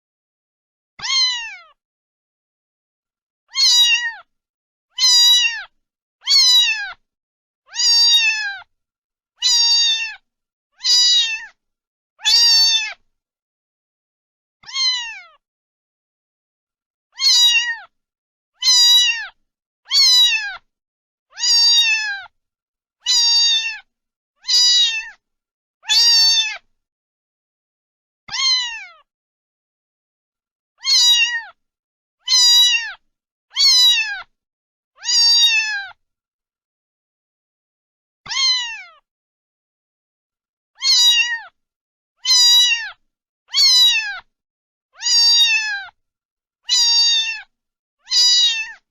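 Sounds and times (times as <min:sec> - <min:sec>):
cat meowing: 0:01.0 - 0:01.8, 0:03.5 - 0:04.3, 0:04.9 - 0:07.0, 0:07.7 - 0:08.7, 0:09.4 - 0:10.2, 0:10.8 - 0:11.6, 0:12.2 - 0:13.0, 0:14.6 - 0:15.4, 0:17.2 - 0:17.9, 0:18.6 - 0:20.7, 0:21.3 - 0:22.3, 0:23.0 - 0:25.2, 0:25.8 - 0:26.7, 0:28.3 - 0:29.1, 0:30.8 - 0:31.6, 0:32.2 - 0:34.3, 0:35.0 - 0:36.0, 0:38.3 - 0:39.0, 0:40.8 - 0:41.6, 0:42.2 - 0:44.3, 0:45.0 - 0:46.0, 0:46.7 - 0:48.9.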